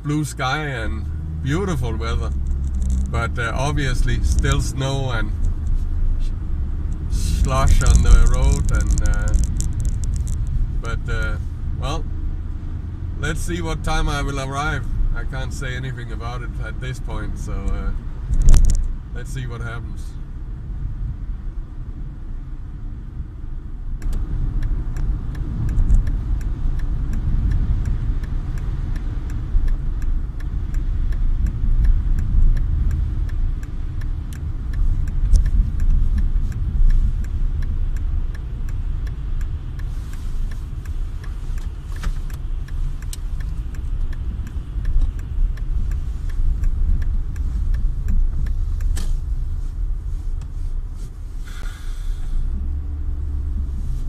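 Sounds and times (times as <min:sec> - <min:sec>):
car engine and tyres rumbling: 0:00.0 - 0:54.0
faint clicks: 0:24.0 - 0:50.6
brief hiss: 0:51.0 - 0:52.5.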